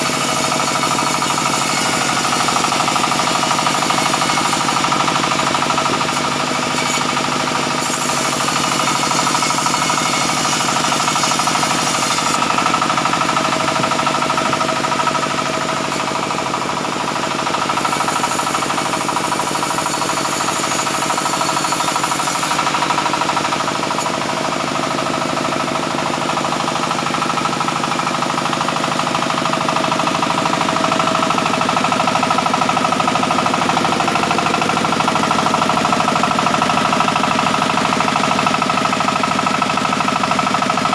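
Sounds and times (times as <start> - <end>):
sawmill saw running: 0.0 - 40.9
blade hissing through wood: 17.8 - 23.0.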